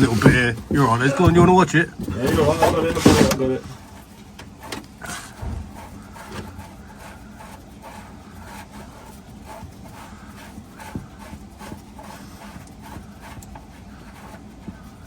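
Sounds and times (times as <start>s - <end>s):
light knocks: 4.4s - 6.7s.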